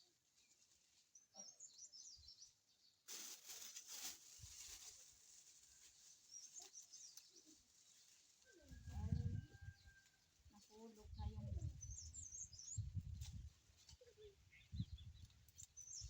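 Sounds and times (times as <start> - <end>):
small birds chirping: 0.0 - 4.1, 4.8 - 16.0
rustling noise: 3.1 - 9.4, 12.8 - 16.0.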